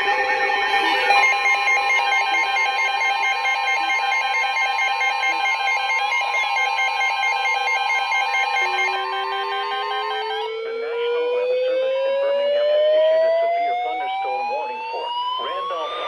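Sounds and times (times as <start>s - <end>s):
rapid alarm beeping: 0.0s - 11.1s
steady high warning tone: 0.0s - 12.6s, 13.8s - 16.0s.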